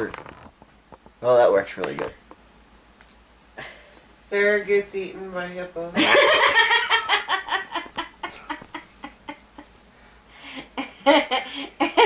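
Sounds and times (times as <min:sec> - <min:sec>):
people laughing: 0:06.0 - 0:09.6.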